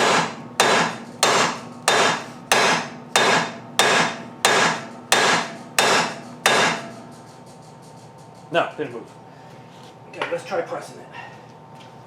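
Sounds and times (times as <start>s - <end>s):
hammer striking metal: 0.0s - 7.4s.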